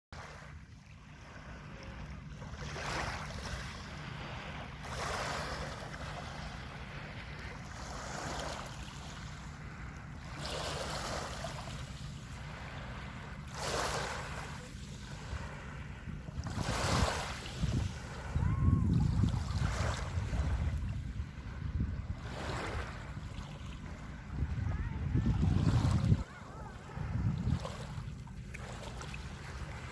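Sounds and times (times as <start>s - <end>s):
sea waves breaking: 0.2s - 29.9s
wind rumble on microphone: 14.5s - 29.9s.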